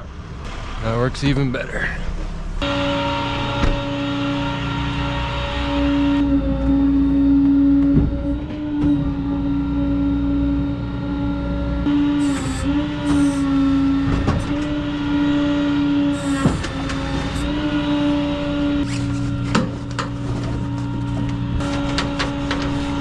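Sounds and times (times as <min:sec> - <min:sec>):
tow truck engine whining: 0:00.0 - 0:23.0
clicks and clanks: 0:18.9 - 0:23.0.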